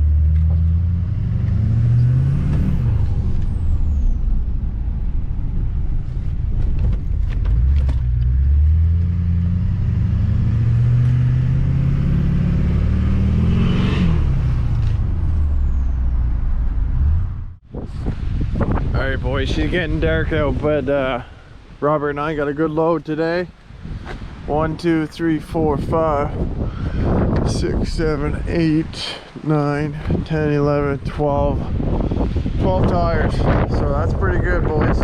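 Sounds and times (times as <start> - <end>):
vehicle engine shifting gears: 0.0 - 17.6
road noise: 0.0 - 35.0.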